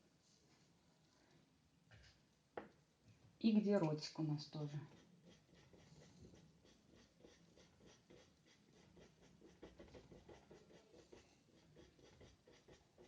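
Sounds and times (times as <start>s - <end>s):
paintbrush scratching on paper: 4.4s - 13.0s.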